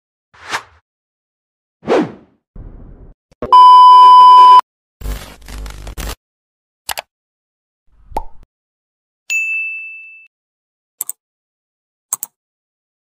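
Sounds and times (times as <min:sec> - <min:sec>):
steady electronic beep: 0:03.5 - 0:04.6.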